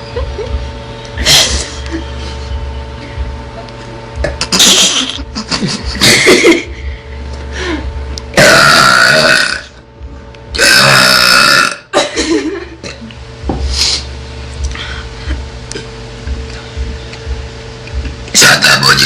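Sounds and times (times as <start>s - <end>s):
girl burping loudly: 8.4s - 9.8s, 10.6s - 11.9s.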